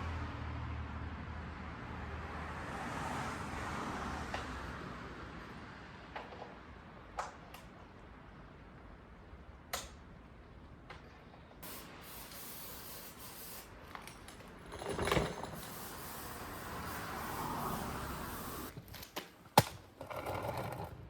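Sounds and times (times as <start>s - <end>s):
aerosol can spraying: 11.6s - 13.8s, 15.6s - 18.7s
clatter: 14.0s - 16.1s.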